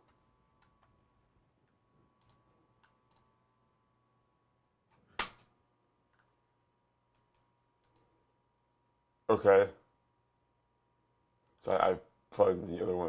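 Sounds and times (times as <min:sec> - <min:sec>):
faint electrical hum: 0:00.0 - 0:13.0
computer mouse clicks: 0:02.2 - 0:03.3, 0:07.1 - 0:08.1.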